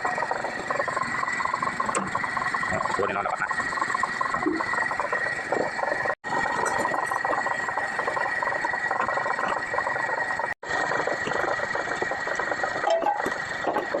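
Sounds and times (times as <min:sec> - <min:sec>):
wheel loader whining and rattling: 0:00.0 - 0:14.0.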